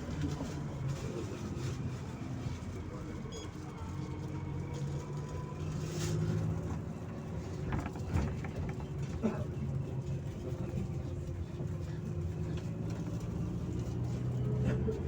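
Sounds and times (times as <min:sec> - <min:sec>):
bus engine hum: 0:00.0 - 0:15.0
road and rattle noise: 0:00.0 - 0:15.0.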